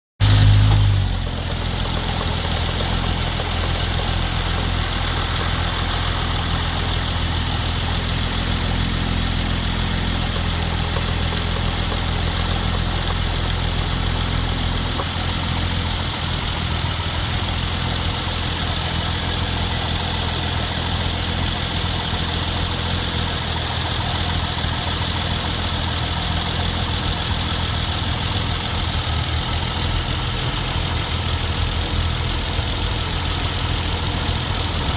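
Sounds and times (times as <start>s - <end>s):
car engine idling: 0.2s - 34.9s.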